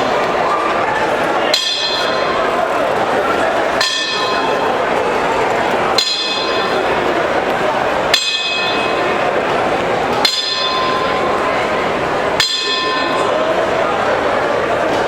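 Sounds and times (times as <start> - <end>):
low murmur: 0.0 - 15.0
boxing ring bell ringing: 1.6 - 2.5, 3.8 - 4.9, 6.0 - 7.4, 8.1 - 13.4.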